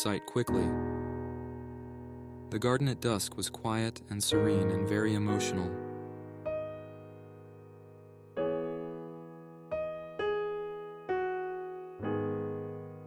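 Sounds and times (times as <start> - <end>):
slow sparse piano notes: 0.0 - 13.0.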